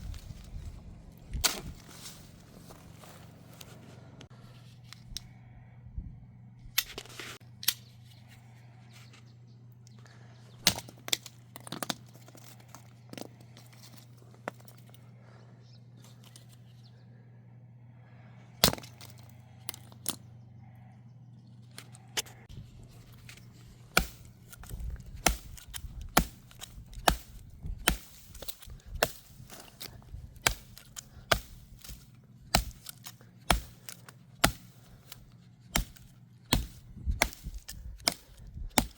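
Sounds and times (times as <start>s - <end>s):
steady low hum: 0.0s - 38.9s
knife chopping into wood: 23.9s - 38.9s.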